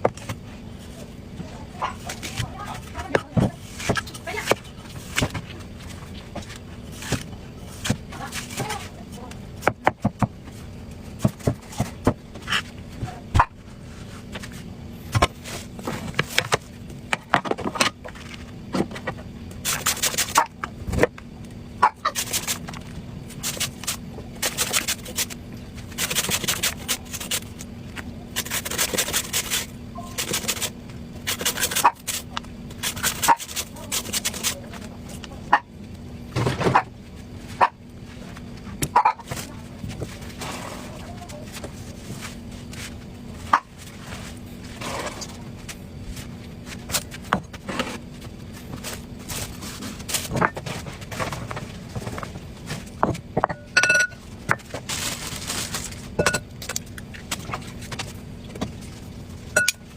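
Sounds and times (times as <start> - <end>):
steady low hum: 0.0 - 59.9
knife cutting watermelon: 19.6 - 20.5, 22.1 - 27.6, 28.4 - 34.6.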